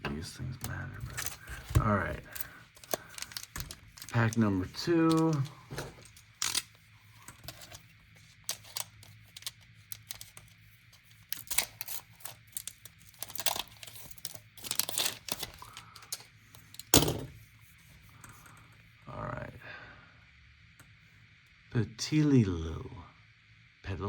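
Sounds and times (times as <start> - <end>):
foil wrapper tearing and crinkling: 1.1 - 17.0.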